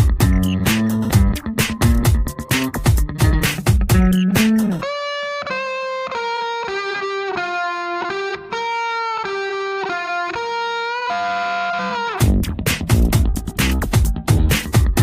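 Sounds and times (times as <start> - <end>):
full band with driving beat: 0.0 - 4.8, 12.2 - 15.0
distorted electric guitar melody: 0.0 - 15.0.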